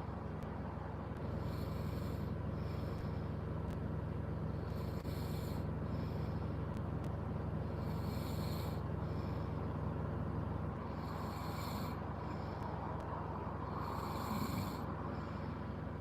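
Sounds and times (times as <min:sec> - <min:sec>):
steady low hum: 0:00.0 - 0:16.0
person snoring: 0:07.8 - 0:08.8, 0:10.9 - 0:12.0, 0:13.7 - 0:14.9.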